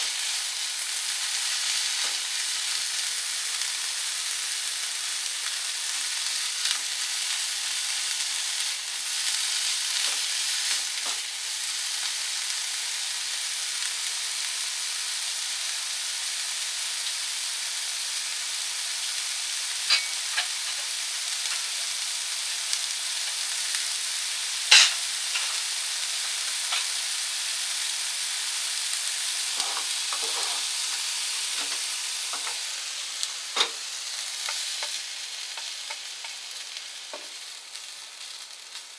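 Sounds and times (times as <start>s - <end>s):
peppers sizzling in a pan: 0.0s - 38.9s
utensil clicking against pan: 19.9s - 20.8s, 34.4s - 36.4s.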